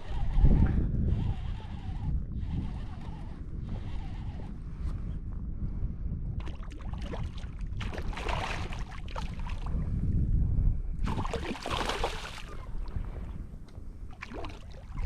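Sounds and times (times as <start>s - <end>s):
wind rumbling on microphone: 0.0s - 15.0s
water splashing and sloshing: 6.4s - 9.7s, 11.0s - 13.0s, 14.1s - 15.0s.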